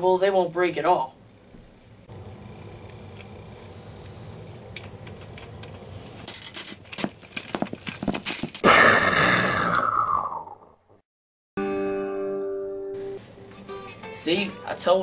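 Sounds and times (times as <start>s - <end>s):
sharp cracks and pops: 6.8s - 8.8s
plucked guitar chord: 11.6s - 14.8s.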